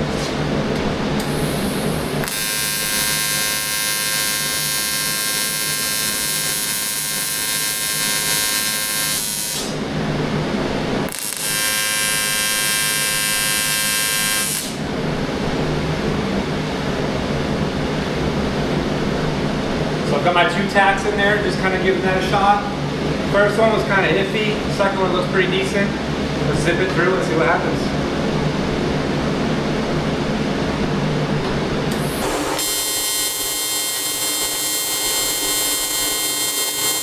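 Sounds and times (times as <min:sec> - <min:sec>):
fan hum: 0:00.0 - 0:11.4, 0:14.6 - 0:37.0
welding arc buzzing: 0:00.8 - 0:09.8, 0:11.0 - 0:14.8, 0:31.4 - 0:37.0.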